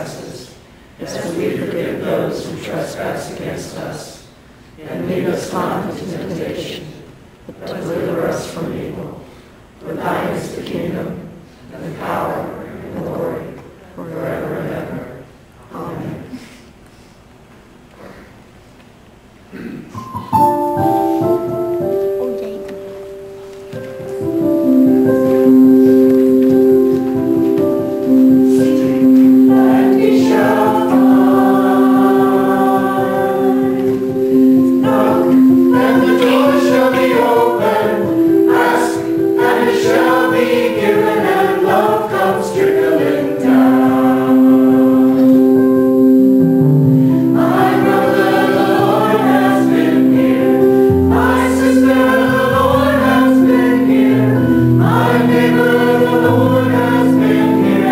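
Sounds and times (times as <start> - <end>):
choir singing a hymn: 0.0 - 16.3, 20.0 - 57.9
keyboard chords: 19.9 - 57.9.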